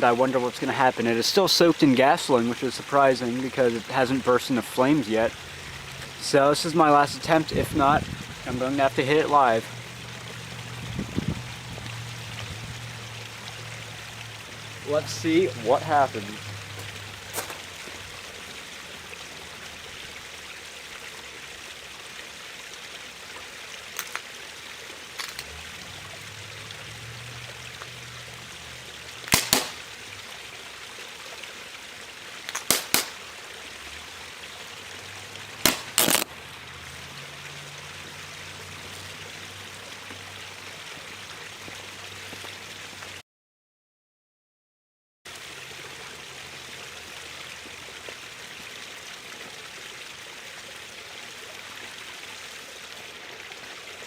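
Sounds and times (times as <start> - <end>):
components bursting with pops: 29.3 - 29.8, 32.5 - 33.2, 35.6 - 36.3.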